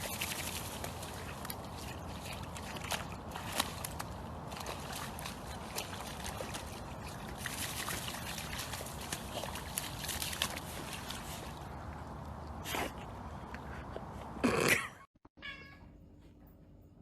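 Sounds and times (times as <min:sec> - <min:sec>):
water sloshing and splashing: 0:00.0 - 0:13.3.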